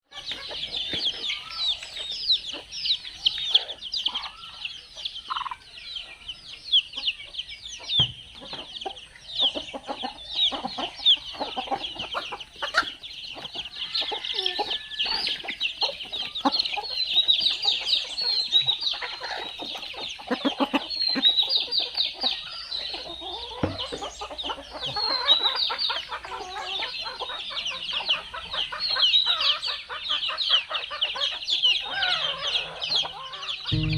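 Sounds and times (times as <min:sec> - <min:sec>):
adult chickens clucking: 0:00.0 - 0:33.9
chicks peeping: 0:00.0 - 0:33.9.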